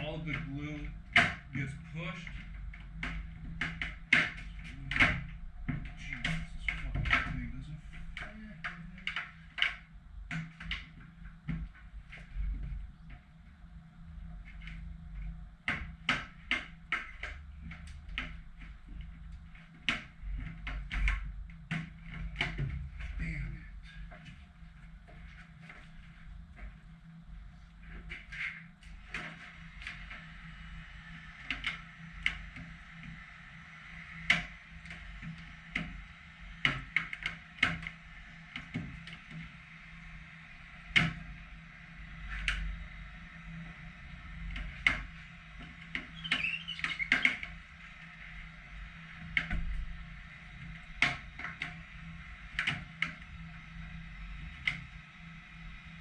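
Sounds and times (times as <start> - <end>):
steady background hum: 0.0 - 56.0
high squeak: 46.1 - 47.4.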